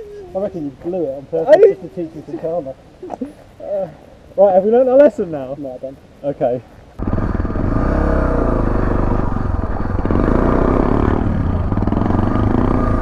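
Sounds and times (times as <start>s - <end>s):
motorcycle engine running: 7.0s - 13.0s.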